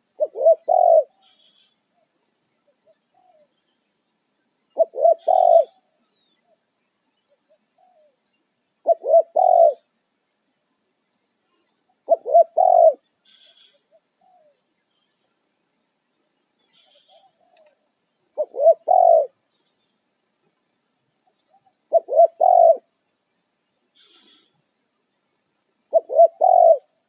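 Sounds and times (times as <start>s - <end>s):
faint bird chirps: 0.0s - 27.0s
dove cooing: 0.2s - 1.6s, 4.8s - 5.8s, 8.8s - 9.8s, 12.1s - 14.5s, 18.4s - 19.4s, 21.9s - 22.9s, 25.9s - 26.9s.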